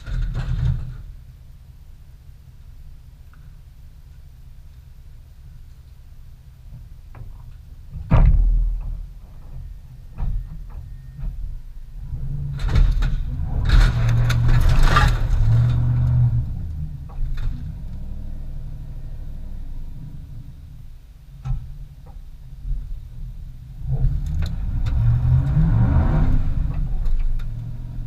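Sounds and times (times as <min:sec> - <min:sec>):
vehicle engine revving: 0:11.9 - 0:20.8, 0:23.4 - 0:28.0.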